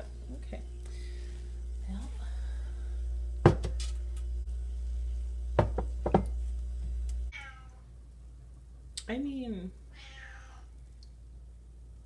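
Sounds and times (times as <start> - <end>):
steady low hum: 0.0 - 10.0, 10.6 - 12.0
cup knocking on hard counter: 3.4 - 3.8, 5.6 - 6.3
cat meowing: 7.3 - 7.8, 9.9 - 10.7.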